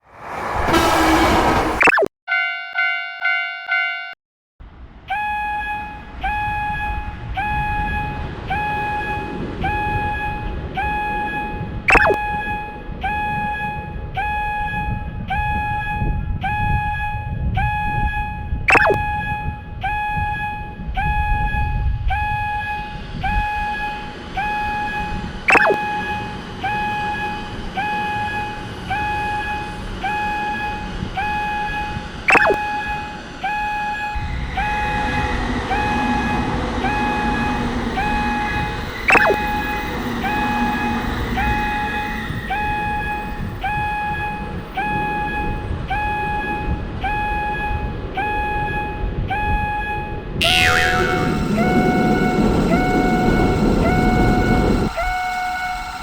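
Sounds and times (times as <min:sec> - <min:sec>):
train rumble and motor hum: 0:00.0 - 0:01.8, 0:32.9 - 0:50.4, 0:51.4 - 0:55.3
sharp downward swoops: 0:00.0 - 0:02.1, 0:11.9 - 0:12.2, 0:18.7 - 0:19.0, 0:25.5 - 0:26.0, 0:32.3 - 0:32.7, 0:39.1 - 0:39.6, 0:50.4 - 0:52.8
crossing warning bell ringing: 0:02.3 - 0:04.2.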